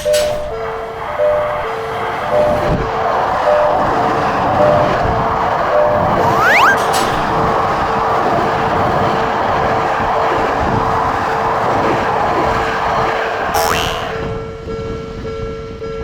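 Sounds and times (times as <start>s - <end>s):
train rumbling past: 0.0s - 6.2s.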